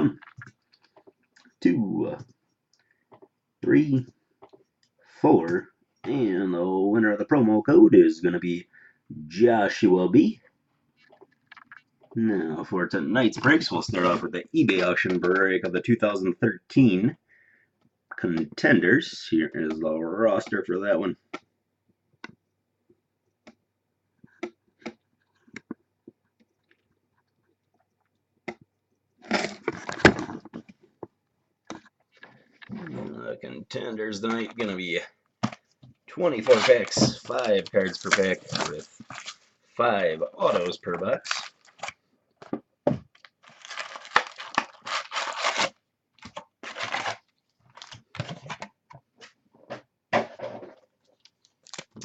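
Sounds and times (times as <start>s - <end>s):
crunching crackling handling noise: 29.2s - 31.0s, 33.8s - 49.2s, 50.7s - 52.0s
packaging crinkling and clicking: 36.2s - 39.5s, 40.5s - 42.5s, 43.1s - 48.7s, 51.2s - 52.0s
packaging tearing and rustling: 36.2s - 39.5s, 40.5s - 42.0s, 43.1s - 48.6s.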